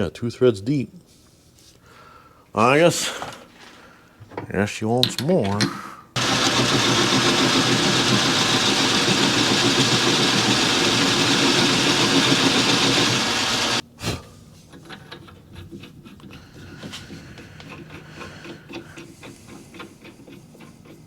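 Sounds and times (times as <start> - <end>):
metal lathe running: 6.2 - 13.8.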